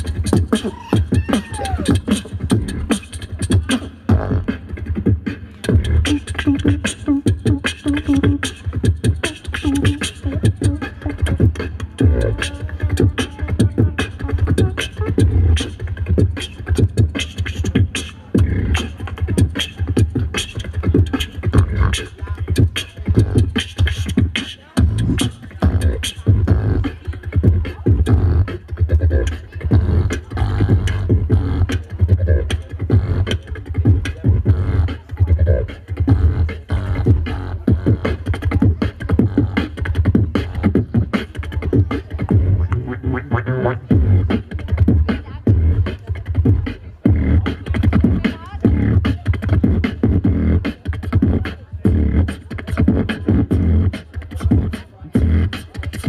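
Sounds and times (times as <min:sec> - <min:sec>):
beatboxing drum beat: 0:00.0 - 0:56.0
deep bass hum: 0:27.4 - 0:41.1, 0:41.7 - 0:50.5.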